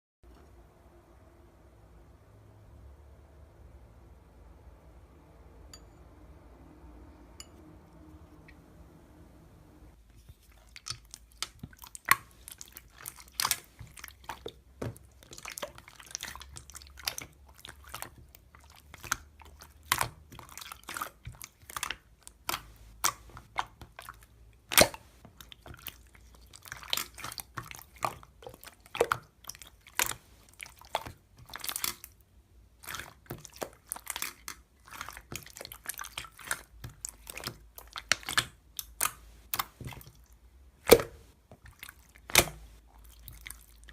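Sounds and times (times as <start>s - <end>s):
slime crunching and popping: 10.5s - 43.9s.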